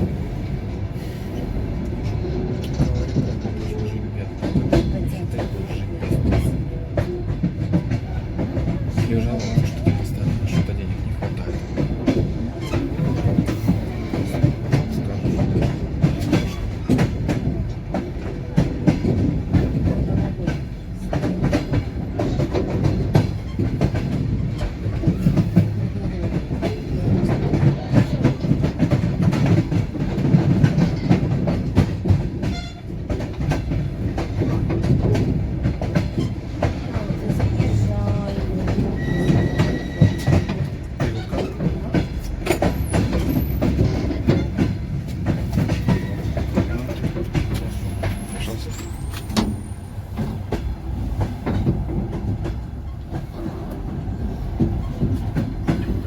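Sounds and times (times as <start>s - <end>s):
low rumble of train carriage: 0.0s - 56.0s
train wheels clattering over rail joints: 0.0s - 56.0s.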